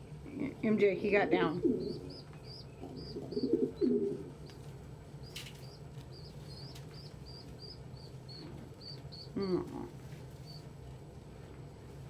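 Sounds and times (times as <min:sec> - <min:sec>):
pigeon cooing: 0:01.5 - 0:04.4.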